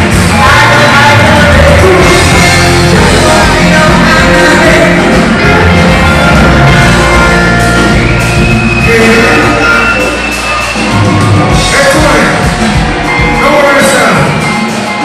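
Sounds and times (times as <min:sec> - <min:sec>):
person singing: 0:00.0 - 0:10.5
live rock band playing: 0:00.0 - 0:15.0.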